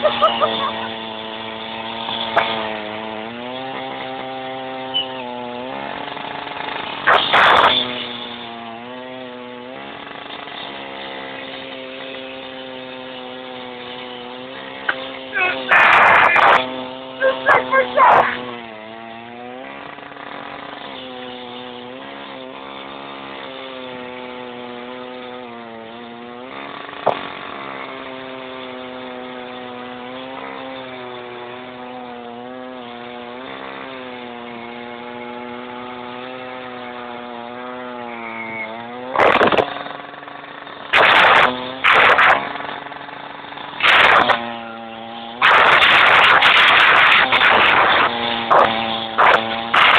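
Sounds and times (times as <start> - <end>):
petrol saw cutting metal post: 0.0 - 49.9
harsh bursts of noise: 15.3 - 18.4, 40.9 - 42.5, 43.8 - 44.4, 45.4 - 49.9.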